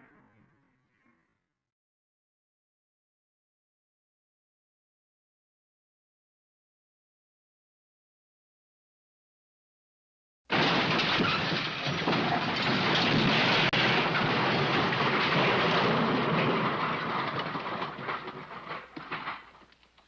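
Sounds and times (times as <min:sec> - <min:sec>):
crackles: 0:10.5 - 0:20.0.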